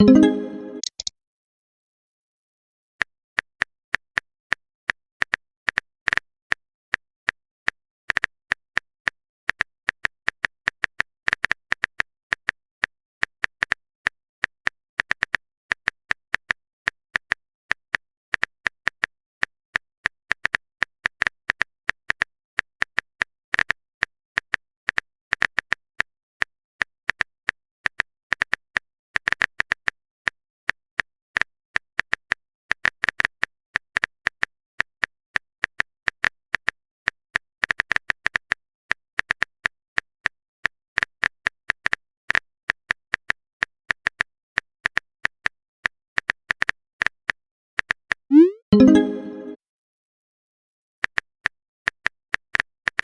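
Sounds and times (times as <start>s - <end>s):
phone keyboard typing clicks: 0.0s - 1.1s.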